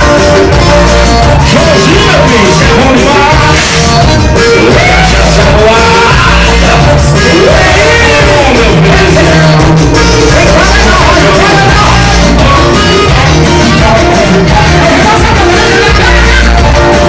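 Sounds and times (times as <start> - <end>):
bass line: 0.0 - 17.0
keyboards: 0.0 - 17.0
person singing: 0.0 - 17.0.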